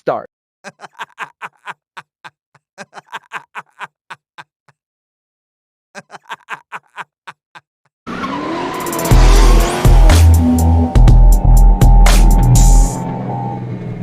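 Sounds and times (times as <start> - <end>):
synthesized voice laughing: 0.7 - 4.8, 6.0 - 7.7
electronic music: 8.7 - 13.1.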